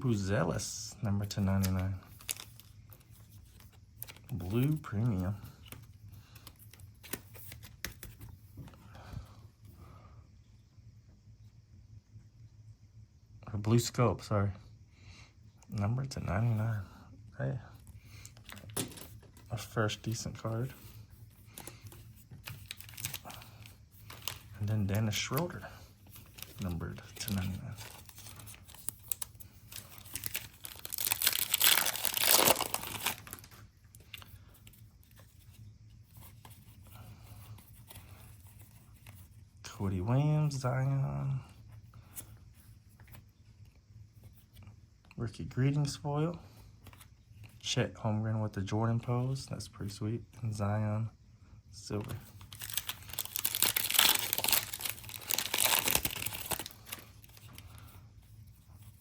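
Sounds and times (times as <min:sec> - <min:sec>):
cards being handled: 0:01.2 - 0:08.8, 0:18.1 - 0:39.3, 0:52.0 - 0:59.0
foil wrapper tearing and crinkling: 0:02.2 - 0:02.7, 0:22.5 - 0:24.6, 0:26.2 - 0:33.5, 0:52.4 - 0:57.7.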